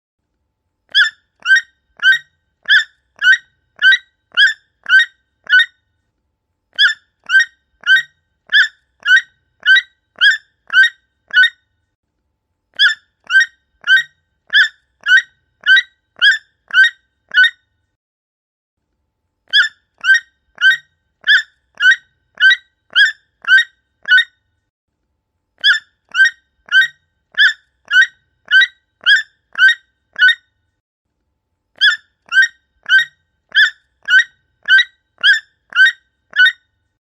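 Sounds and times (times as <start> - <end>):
toucan hoarse calls: 0.9 - 5.7, 6.8 - 11.6, 12.8 - 17.6, 19.5 - 24.3, 25.6 - 30.4, 31.8 - 36.6.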